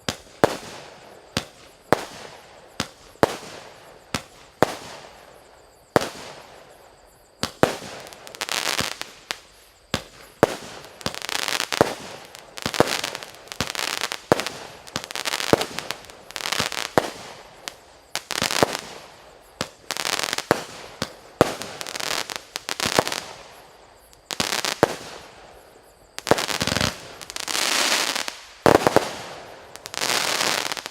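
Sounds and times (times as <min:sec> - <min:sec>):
firework bursts: 0:07.4 - 0:30.9.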